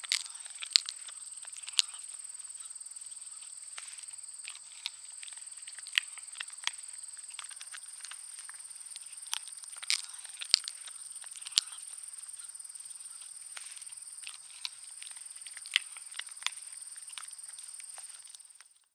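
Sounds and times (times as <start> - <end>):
dog chewing a bone: 0.0 - 2.0.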